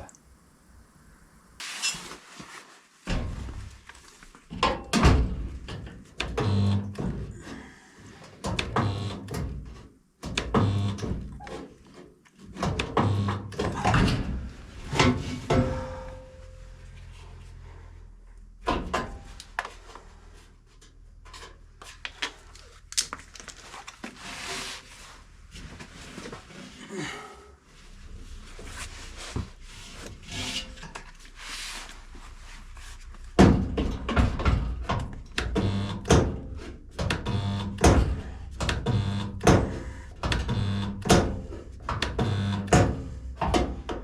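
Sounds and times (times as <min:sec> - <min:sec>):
low welding buzz: 0:06.3 - 0:07.0, 0:08.7 - 0:09.5, 0:10.4 - 0:11.1, 0:13.0 - 0:13.5, 0:35.2 - 0:43.2
spot welder clunks: 0:12.7 - 0:16.2, 0:33.4 - 0:44.0.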